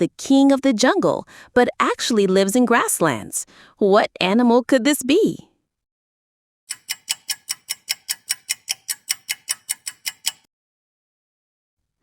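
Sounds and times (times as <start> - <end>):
clock ticking: 6.7 - 10.5.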